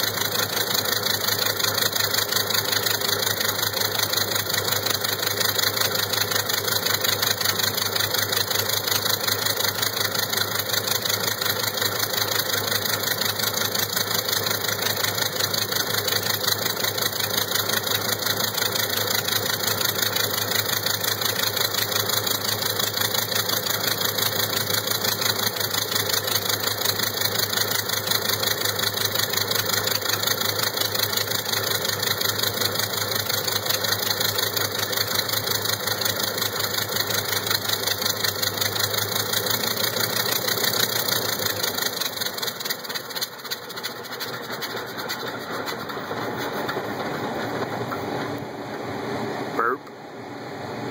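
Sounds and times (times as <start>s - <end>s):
radial aircraft engine running: 0.0s - 49.9s.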